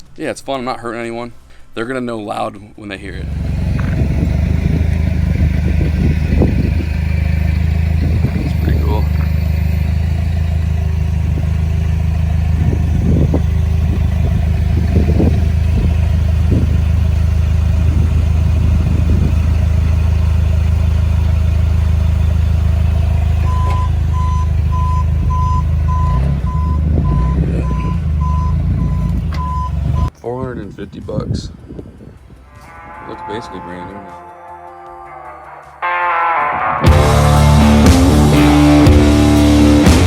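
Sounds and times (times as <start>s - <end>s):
road noise: 3.0s - 40.0s
vehicle engine droning: 3.1s - 30.2s, 35.0s - 40.0s
reversing beeper: 23.4s - 30.1s, 32.5s - 39.7s.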